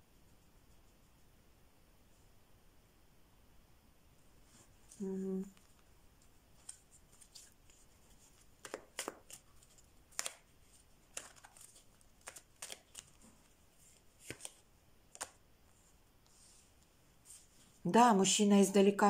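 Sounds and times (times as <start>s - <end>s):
cards rustling: 6.6s - 15.4s
cards clicking on a table: 8.6s - 10.5s, 11.1s - 13.2s, 14.2s - 15.4s.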